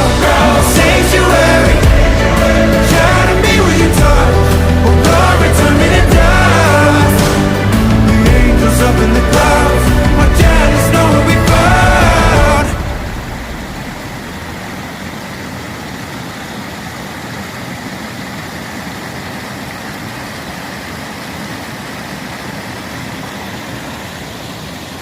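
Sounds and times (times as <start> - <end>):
music track: 0.0 - 14.7
fast-flowing river rushing: 0.0 - 25.0.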